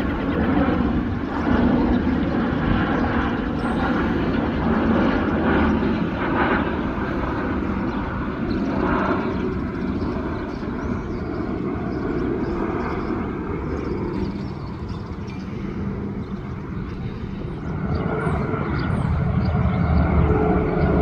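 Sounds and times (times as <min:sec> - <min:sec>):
jet engines rumbling: 0:00.0 - 0:21.0.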